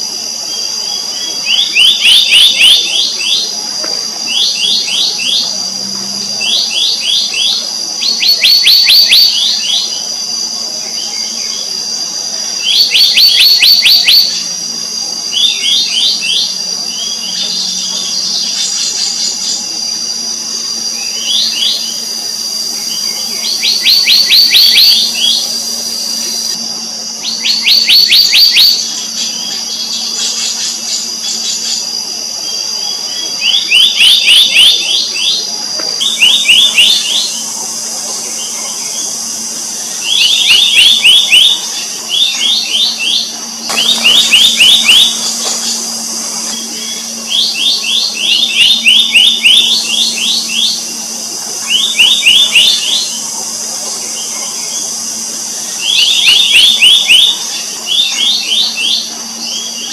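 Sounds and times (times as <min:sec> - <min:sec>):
high-pitched insect drone: 0:00.0 - 0:59.9
bird calling sharp notes: 0:36.0 - 0:53.3.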